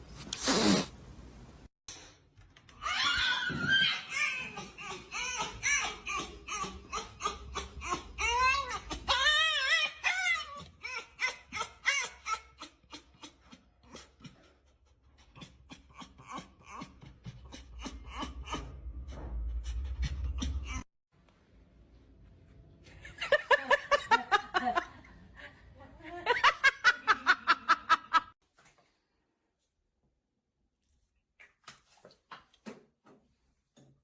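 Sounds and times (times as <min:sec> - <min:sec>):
dog whining: 0:02.9 - 0:12.7
low rumble: 0:18.1 - 0:20.8.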